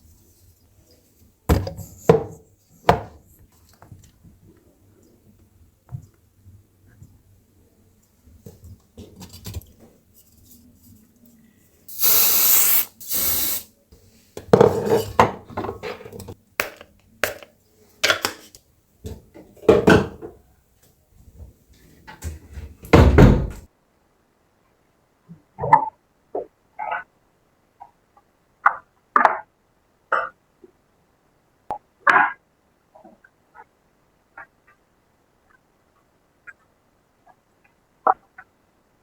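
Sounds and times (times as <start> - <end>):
short rushing hisses: 11.9 - 13.7
clatter of pots and dishes: 14.4 - 16.4.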